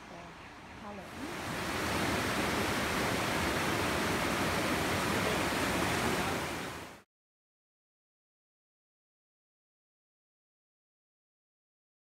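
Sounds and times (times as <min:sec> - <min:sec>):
waterfall rushing: 0:01.0 - 0:07.0.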